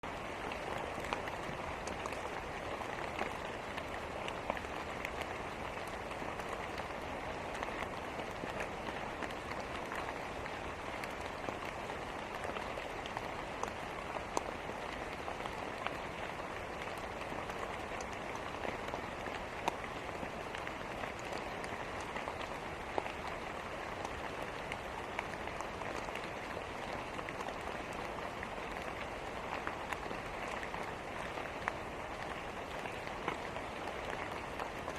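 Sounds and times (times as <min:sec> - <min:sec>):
steady rain: 0:00.0 - 0:34.9.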